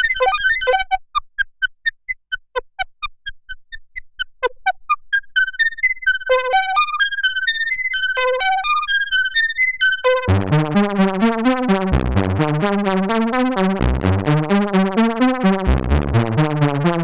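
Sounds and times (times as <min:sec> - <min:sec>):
synthesizer arpeggio: 0:00.0 - 0:03.1, 0:04.4 - 0:17.0.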